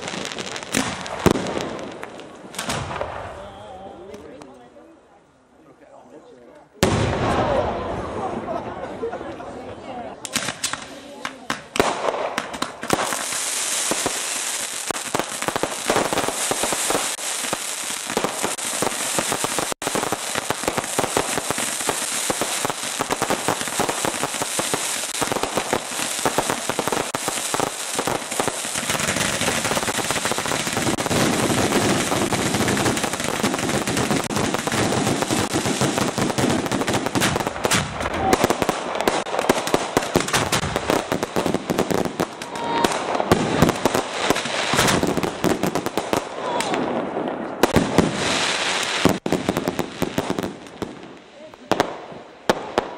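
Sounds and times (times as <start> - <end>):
deep firework reports: 0.0 - 4.2, 6.8 - 9.1, 10.2 - 52.9
fireworks bangs and crackle: 0.0 - 4.5, 6.8 - 9.0, 10.2 - 52.9.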